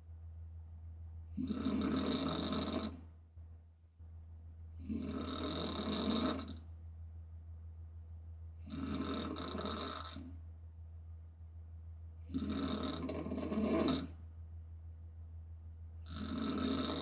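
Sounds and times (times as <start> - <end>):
steady low hum: 0.0 - 17.0
woman snoring: 1.4 - 3.0, 4.8 - 6.6, 8.6 - 10.3, 12.3 - 14.2, 16.1 - 17.0.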